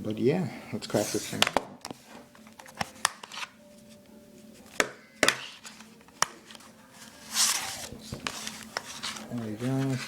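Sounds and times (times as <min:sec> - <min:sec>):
clicks and taps of packaging: 0:01.4 - 0:03.5, 0:04.7 - 0:06.6.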